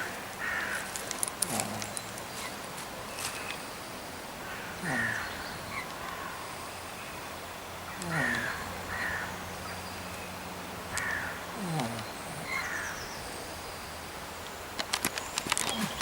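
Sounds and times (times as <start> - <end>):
pig snoring: 1.5 - 2.0, 8.0 - 8.6, 11.6 - 12.6.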